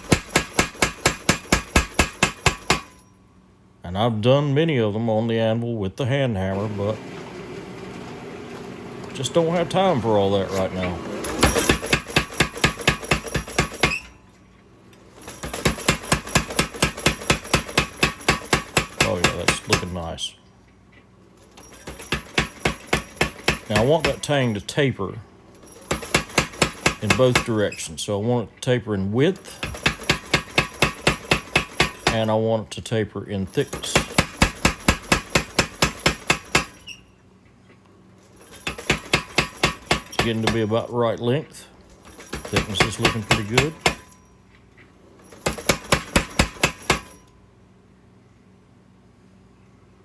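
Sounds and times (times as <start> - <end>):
power hammer striking hot steel: 0.0 - 3.1, 11.2 - 14.1, 15.3 - 20.0, 21.7 - 24.5, 25.8 - 27.7, 29.5 - 32.3, 33.7 - 36.9, 38.5 - 40.8, 42.1 - 44.2, 45.3 - 47.2.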